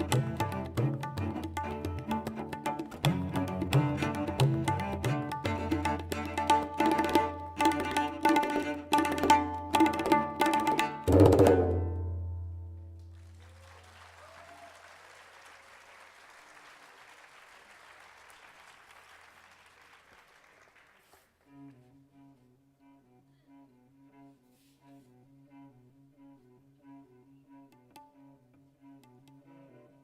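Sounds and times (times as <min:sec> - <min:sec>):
cello notes: 0:00.0 - 0:12.8
tabla strokes: 0:00.0 - 0:12.8, 0:27.6 - 0:29.7.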